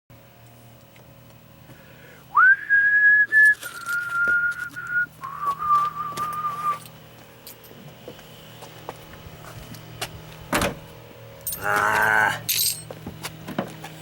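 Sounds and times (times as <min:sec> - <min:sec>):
person whistling long notes: 0:02.3 - 0:06.8.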